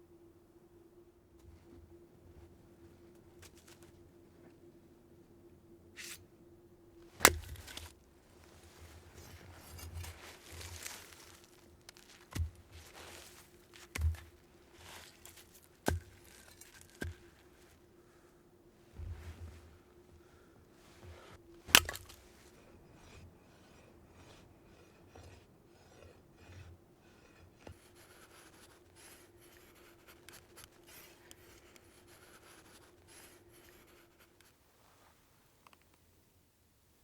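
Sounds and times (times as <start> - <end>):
scraping and rubbing: 7.2 - 17.7, 20.8 - 34.6.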